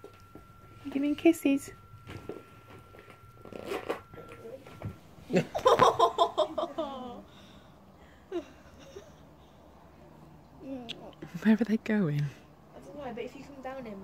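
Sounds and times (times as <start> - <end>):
high-pitched giggling laughter: 5.3 - 7.2.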